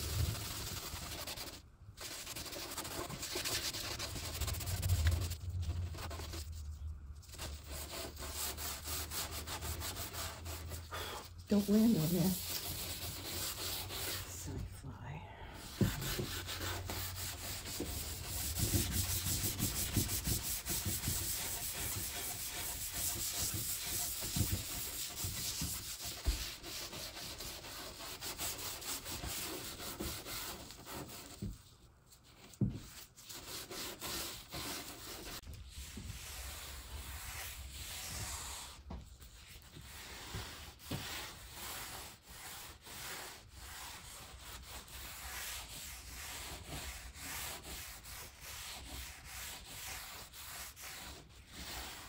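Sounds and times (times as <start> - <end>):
pad rubbing wood: 15.6 - 31.7.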